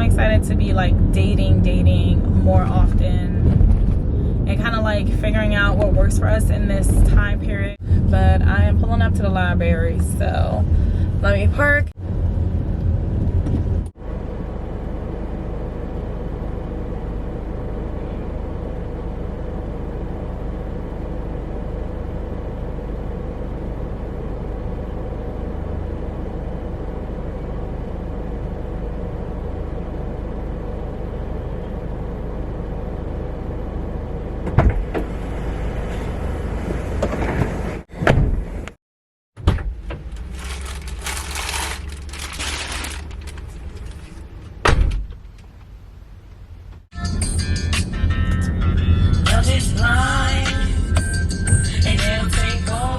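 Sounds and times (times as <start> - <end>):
car engine rumble: 0.0 - 38.8, 39.4 - 52.9
road noise inside car: 0.0 - 38.8, 39.4 - 52.9
sharp thump: 37.0 - 38.5.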